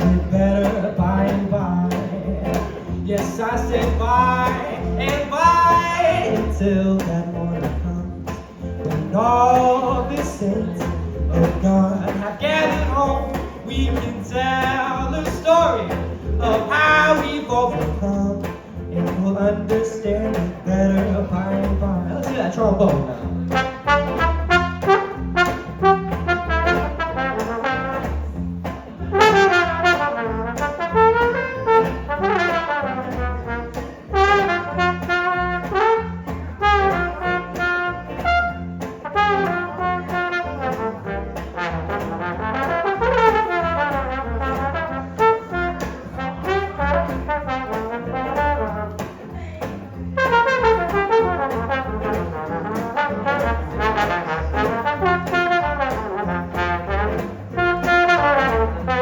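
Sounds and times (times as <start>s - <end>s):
jazz band backing: 0.0s - 59.0s
trombone solo: 23.5s - 28.4s, 29.1s - 49.1s, 50.1s - 59.0s.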